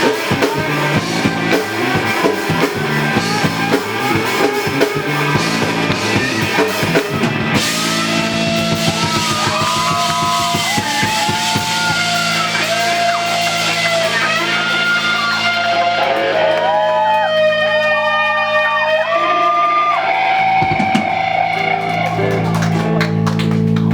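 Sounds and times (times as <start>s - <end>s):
drum hits: 0.0s - 15.0s, 20.6s - 21.5s
electric guitar bending notes: 0.0s - 23.9s
held low chord: 0.6s - 15.7s.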